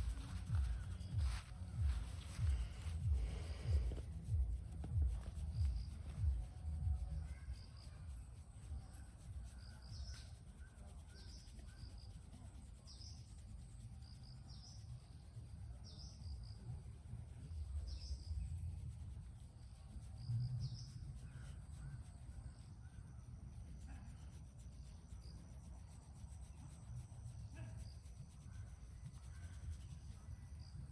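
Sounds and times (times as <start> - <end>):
low outdoor rumble: 0.0 - 8.8
bird chirping: 0.0 - 12.1.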